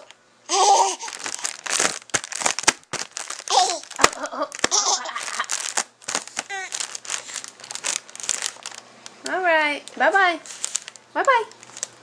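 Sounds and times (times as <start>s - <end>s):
crumpled material crinkling: 0.5s - 8.9s, 9.8s - 12.0s
baby vocalizing: 6.4s - 6.8s.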